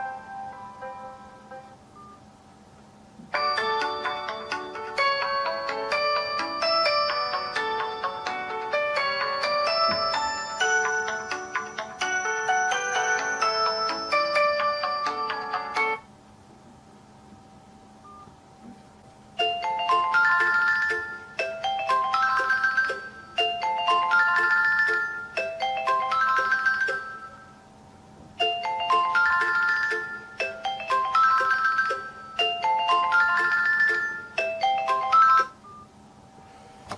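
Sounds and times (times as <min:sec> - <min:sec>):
phone ringtone electronic melody: 0:03.3 - 0:16.1, 0:19.4 - 0:27.6, 0:28.4 - 0:35.9.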